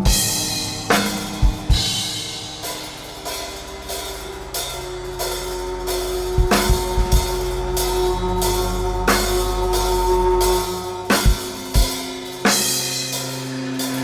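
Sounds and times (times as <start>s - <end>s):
bass drum kicks: 0.0s - 2.3s, 6.3s - 7.6s
ringing cymbal strokes: 0.0s - 14.0s.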